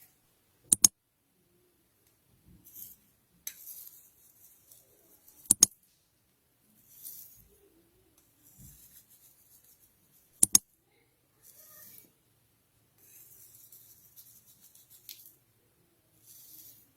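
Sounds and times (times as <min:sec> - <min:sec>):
sharp double clicks: 0:00.7 - 0:00.9, 0:05.5 - 0:05.7, 0:10.4 - 0:10.6
faint rustling: 0:02.3 - 0:12.2, 0:13.0 - 0:16.9.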